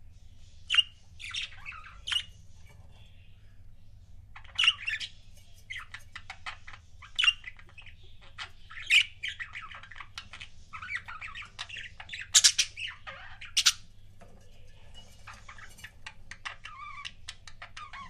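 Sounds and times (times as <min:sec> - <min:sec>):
budgerigars chirping: 0:00.5 - 0:03.4, 0:04.3 - 0:18.0
budgerigars squawking: 0:04.4 - 0:13.9.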